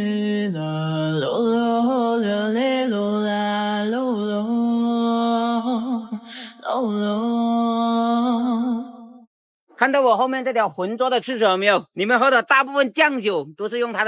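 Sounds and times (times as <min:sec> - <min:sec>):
slow chant-like melody: 0:00.0 - 0:09.2.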